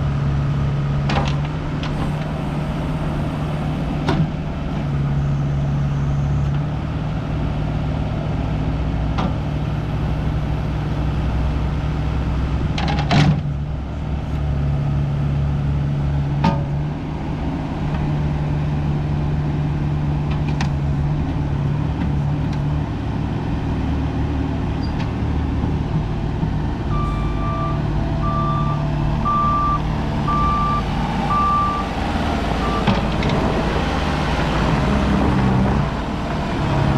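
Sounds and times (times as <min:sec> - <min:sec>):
diesel engine running: 0:01.8 - 0:05.8, 0:26.7 - 0:36.9
reversing alarm beeping: 0:02.0 - 0:04.2, 0:26.9 - 0:36.9.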